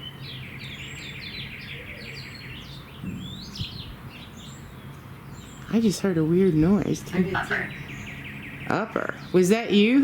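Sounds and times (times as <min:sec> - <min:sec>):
small birds chirping: 0:00.0 - 0:10.0
steady low hum: 0:00.0 - 0:10.0.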